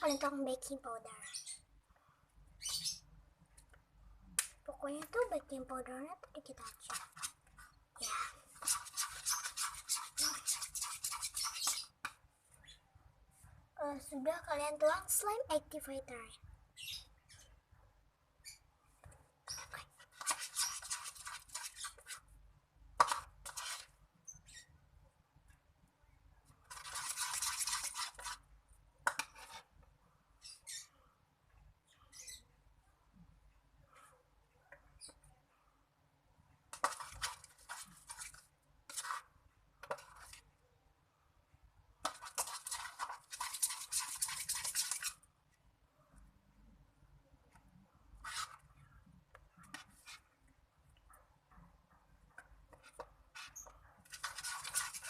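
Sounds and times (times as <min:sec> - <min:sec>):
slime being stirred in a bowl: 0:06.3 - 0:12.1, 0:19.5 - 0:22.4, 0:23.0 - 0:24.0, 0:26.4 - 0:29.8, 0:36.7 - 0:40.5, 0:42.0 - 0:45.3, 0:48.1 - 0:48.8, 0:49.4 - 0:50.4, 0:52.4 - 0:55.0.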